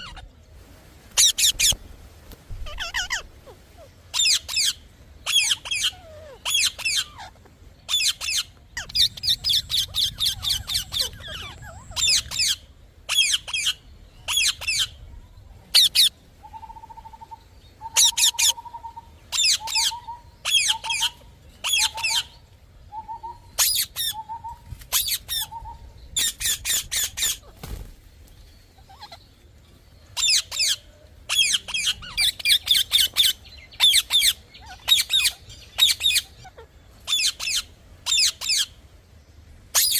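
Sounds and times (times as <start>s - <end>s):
parrot screeching: 2.6s - 3.3s.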